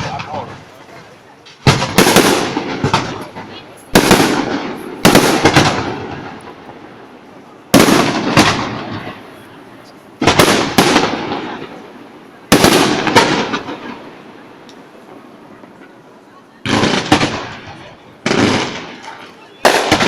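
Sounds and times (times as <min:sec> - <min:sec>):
firework shells bursting: 0:00.0 - 0:07.1
rolling echo: 0:00.0 - 0:20.0.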